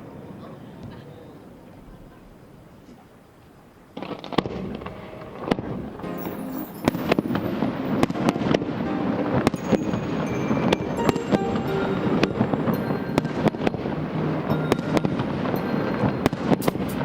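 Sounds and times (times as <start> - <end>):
fireworks bangs and crackles: 4.0 - 17.0
music: 6.0 - 17.0.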